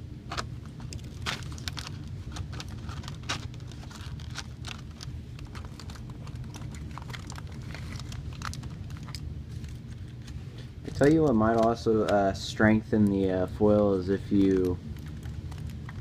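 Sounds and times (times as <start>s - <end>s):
steady low hum: 0.0s - 16.0s
aluminum foil crinkling: 0.3s - 13.3s, 13.9s - 16.0s.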